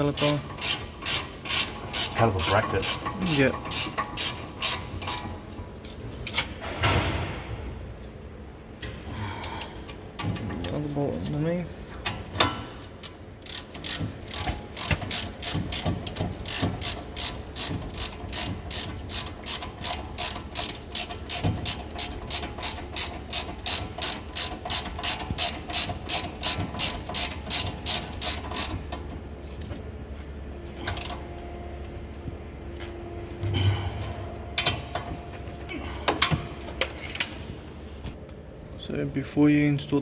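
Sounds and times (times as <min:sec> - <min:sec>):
ratchet wrench clicking: 0:00.5 - 0:05.3, 0:13.0 - 0:29.0.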